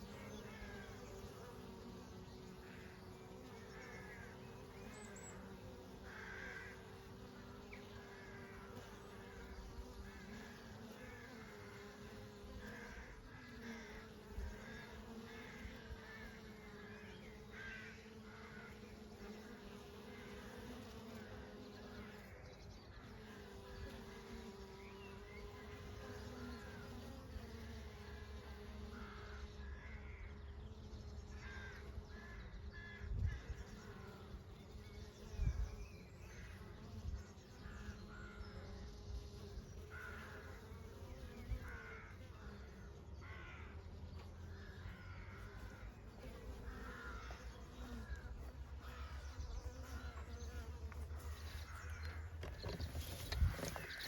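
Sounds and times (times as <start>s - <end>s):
bees buzzing: 0.0s - 54.0s
birds calling: 0.0s - 54.0s.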